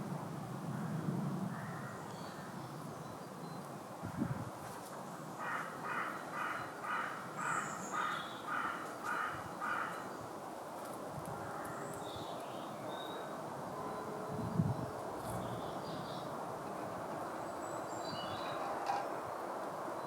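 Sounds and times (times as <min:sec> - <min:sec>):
bird harsh calls: 0:05.4 - 0:10.1.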